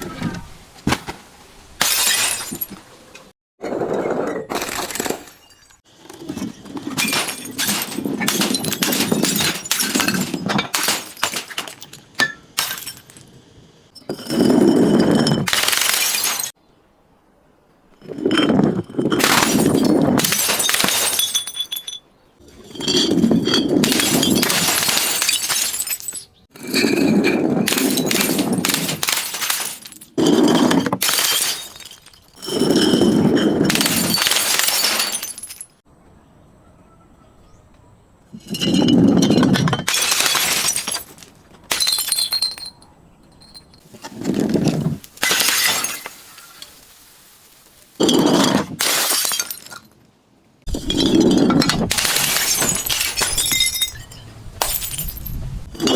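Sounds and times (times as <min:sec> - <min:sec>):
glass bottles shattering: 0:01.8 - 0:02.8, 0:04.3 - 0:13.2, 0:14.0 - 0:16.6, 0:18.0 - 0:35.8, 0:38.4 - 0:46.9, 0:48.0 - 0:50.0, 0:50.7 - 0:55.9
glass shards clinking: 0:06.4 - 0:13.2, 0:13.9 - 0:16.6, 0:18.1 - 0:35.8, 0:38.4 - 0:46.8, 0:48.0 - 0:49.9, 0:50.7 - 0:55.9.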